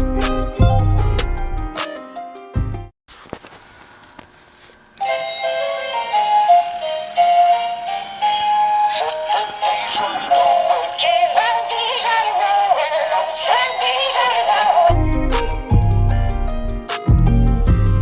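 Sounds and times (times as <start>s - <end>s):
toy singing electronic song: 5.0s - 15.0s.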